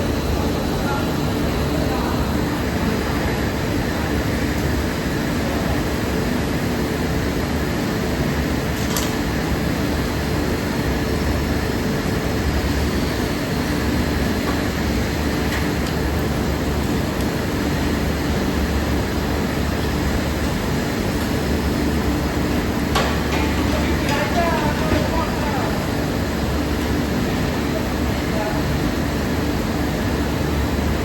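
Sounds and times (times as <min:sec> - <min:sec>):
industrial machinery drone: 0:00.0 - 0:31.0.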